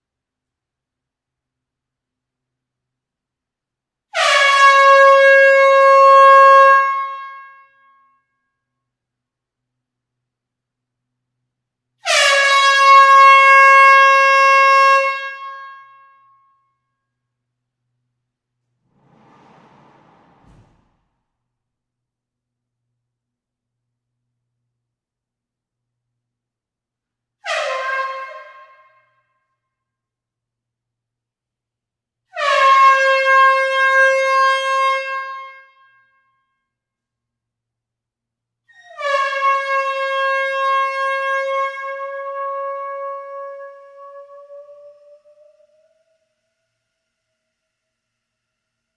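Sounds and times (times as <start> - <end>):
air horn blast: 18.9 - 21.2.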